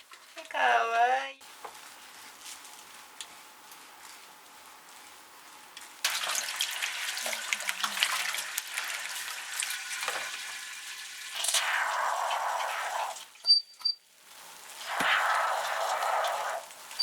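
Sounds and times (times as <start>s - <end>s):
shower water spraying: 6.0s - 13.4s, 14.3s - 17.0s.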